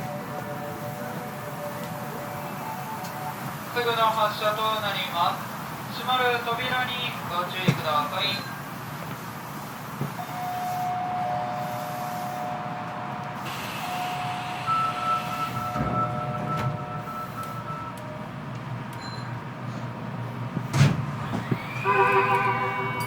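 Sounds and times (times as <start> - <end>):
whistling inverter tones: 21.3 - 23.0.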